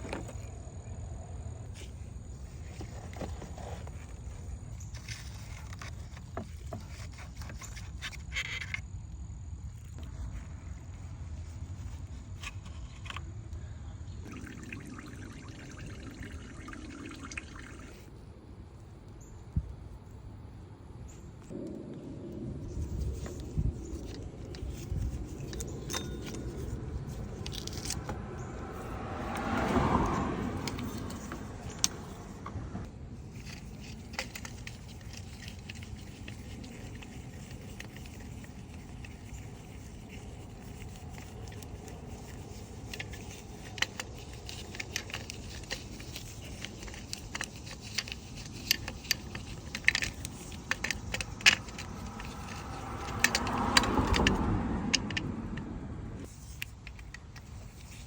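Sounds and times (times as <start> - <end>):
car passing: 21.5 - 33.2, 50.8 - 56.3
hand tools clicking on metal: 24.0 - 28.2, 41.5 - 55.6.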